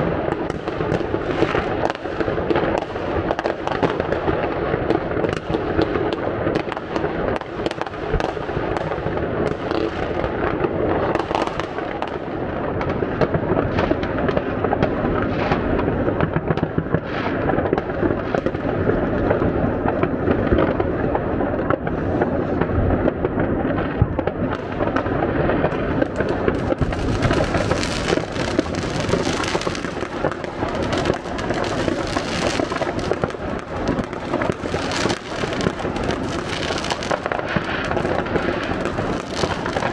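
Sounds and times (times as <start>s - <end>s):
fireworks and firecrackers exploding: 0.0s - 39.9s.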